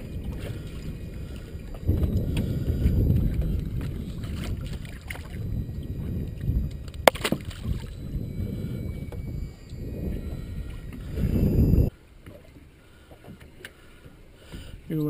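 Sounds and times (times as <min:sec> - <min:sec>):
wind buffeting microphone: 0:00.0 - 0:11.9
water around a boat: 0:00.0 - 0:15.0.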